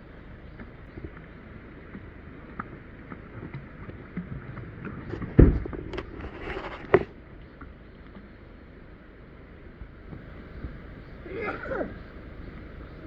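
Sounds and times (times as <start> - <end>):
splashy water rush: 10.1 - 13.0.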